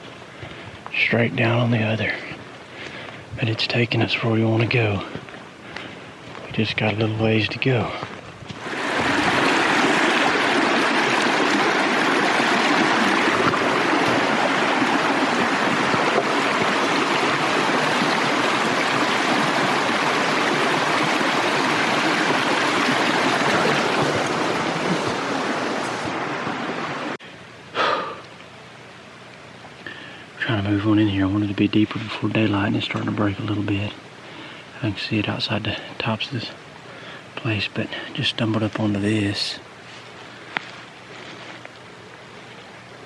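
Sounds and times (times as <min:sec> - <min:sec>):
flowing water rushing: 0:01.4 - 0:27.2.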